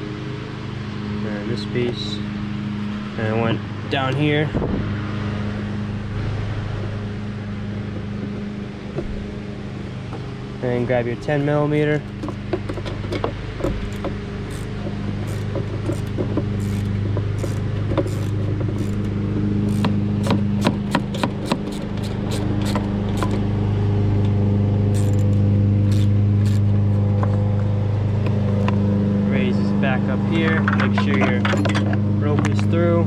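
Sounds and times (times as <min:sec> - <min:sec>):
low machine hum: 0:00.0 - 0:33.0
ratchet wrench clicking: 0:13.1 - 0:23.4, 0:24.9 - 0:26.8.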